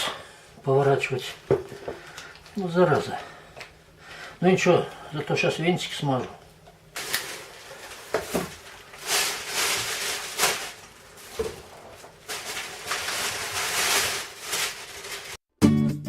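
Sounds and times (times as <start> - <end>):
acoustic guitar music: 15.6 - 16.0.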